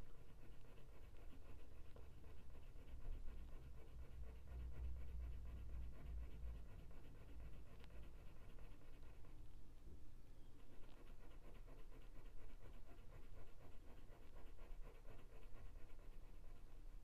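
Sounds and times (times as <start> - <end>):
pencil scratching on paper: 0.0 - 9.3, 10.7 - 17.0
low steady rumble: 0.0 - 10.9.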